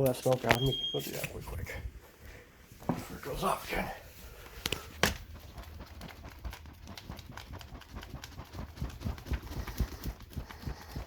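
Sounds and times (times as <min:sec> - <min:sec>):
footsteps on hard floor: 0:02.8 - 0:03.1.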